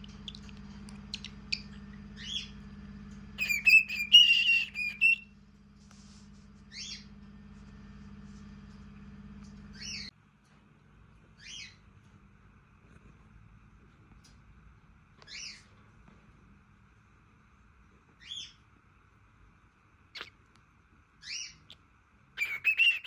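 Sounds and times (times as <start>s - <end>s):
cockatiel chirping: 0.0s - 2.6s, 3.4s - 5.3s, 6.7s - 7.1s, 9.7s - 10.1s, 11.4s - 11.8s, 15.2s - 15.7s, 18.2s - 18.6s, 20.1s - 20.4s, 21.2s - 21.8s, 22.4s - 23.0s
low steady hum: 0.0s - 23.0s.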